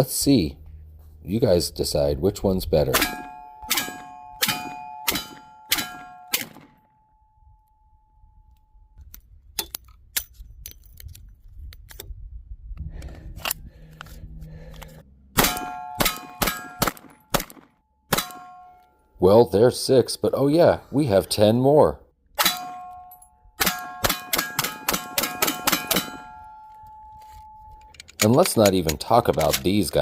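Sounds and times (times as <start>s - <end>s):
steel target ringing: 2.9s - 7.6s, 15.4s - 19.0s, 22.4s - 27.9s
handgun shots: 3.0s - 6.8s, 15.4s - 18.5s
handling clicks: 25.9s - 30.0s.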